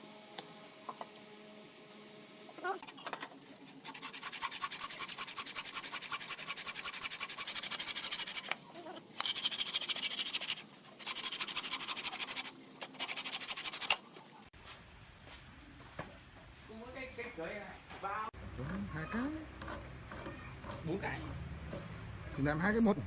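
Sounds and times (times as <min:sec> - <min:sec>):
tool rasping wood on lathe: 0:03.7 - 0:08.6, 0:09.2 - 0:14.0, 0:19.6 - 0:21.9.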